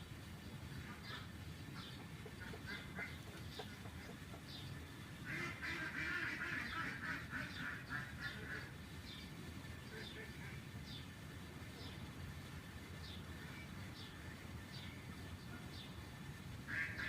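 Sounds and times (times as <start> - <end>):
ducks calling: 0.7 - 9.0, 16.6 - 17.0.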